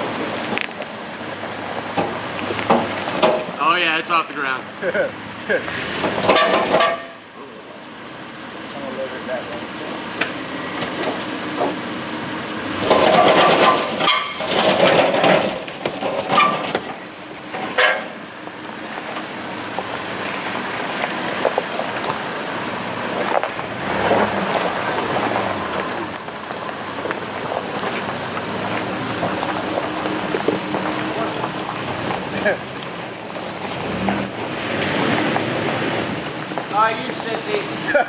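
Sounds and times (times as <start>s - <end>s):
off-road engine revving: 7.7s - 38.0s.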